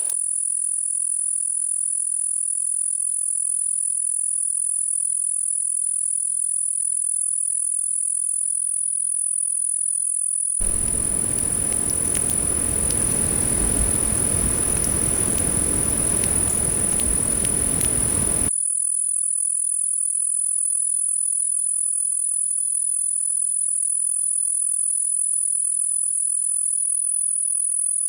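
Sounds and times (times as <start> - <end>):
broad rushing noise: 10.6 - 18.5
insects trilling: 10.6 - 18.5
light clicks: 10.6 - 18.5.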